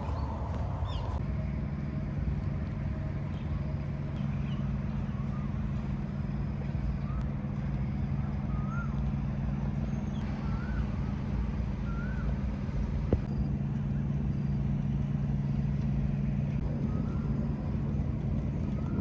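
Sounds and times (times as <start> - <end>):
road traffic hum: 0.0 - 19.0.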